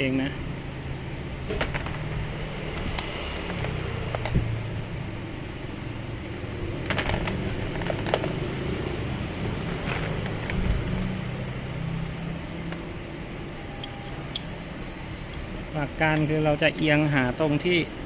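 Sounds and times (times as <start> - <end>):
hand tools clicking and clinking: 9.5 - 11.2, 13.6 - 17.0.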